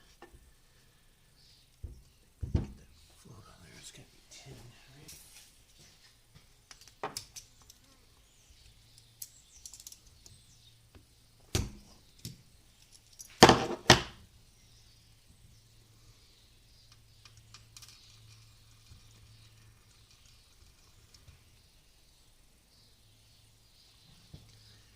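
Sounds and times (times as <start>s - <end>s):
metal parts clicking and clinking: 9.0s - 10.2s, 12.2s - 13.4s
sharp knocks: 13.4s - 14.2s.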